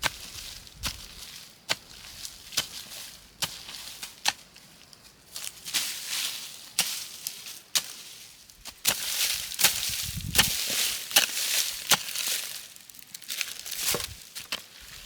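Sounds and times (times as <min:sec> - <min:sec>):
rustling: 0:09.0 - 0:15.0.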